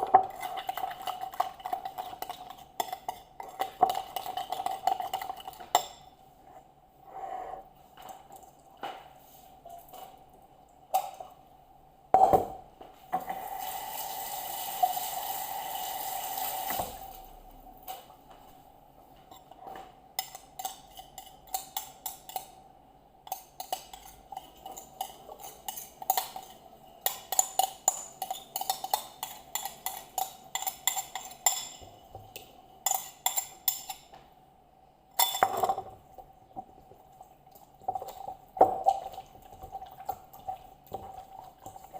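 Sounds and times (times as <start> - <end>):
bowl and utensils knocking: 35.2 - 36.0.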